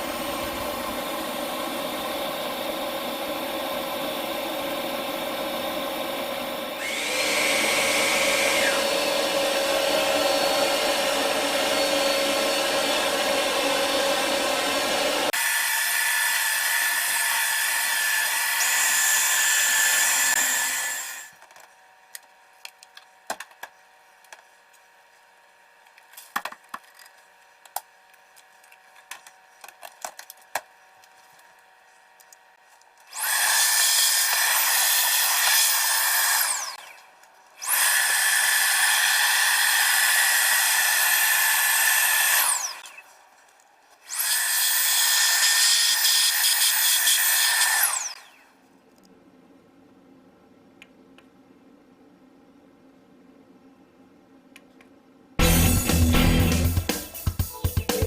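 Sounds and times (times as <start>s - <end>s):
stick vacuum motor whining: 0.0s - 21.6s, 32.2s - 48.4s.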